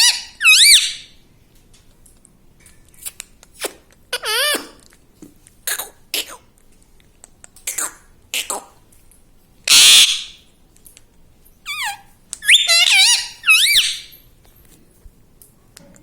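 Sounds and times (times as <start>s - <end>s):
parakeet screeching: 0.0s - 1.1s, 9.7s - 10.4s, 11.7s - 14.2s
parakeet whistled calls: 0.0s - 1.1s, 9.7s - 10.4s, 11.7s - 14.2s.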